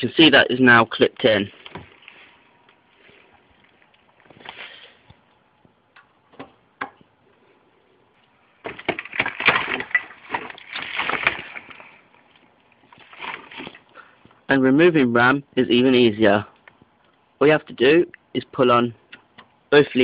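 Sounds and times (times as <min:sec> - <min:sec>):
crackling clattering handling noise: 0:01.1 - 0:07.1, 0:08.1 - 0:14.4.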